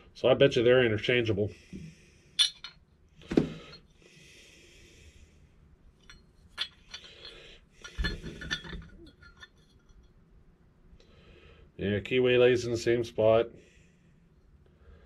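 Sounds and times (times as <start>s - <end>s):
soft breath: 1.5s - 2.4s, 3.2s - 5.7s, 6.8s - 8.6s, 11.0s - 11.8s, 13.5s - 15.0s
metal parts clinking and knocking: 2.4s - 2.8s, 6.0s - 10.0s.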